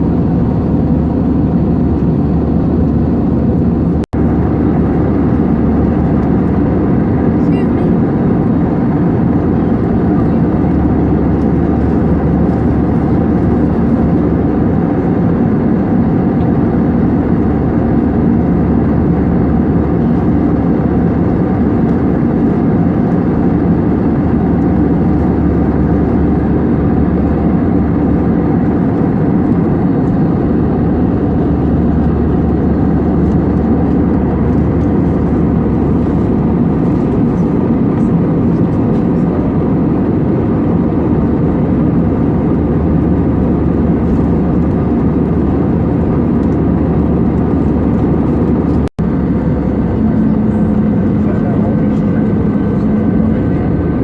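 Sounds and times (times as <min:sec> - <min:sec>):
airplane cabin engine and airflow rush: 0:00.0 - 0:54.0.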